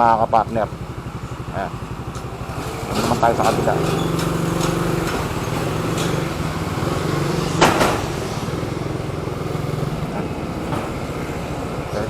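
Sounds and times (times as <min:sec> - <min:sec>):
vehicle engine running: 0:00.0 - 0:12.0
sharp metallic clank: 0:02.1 - 0:09.1.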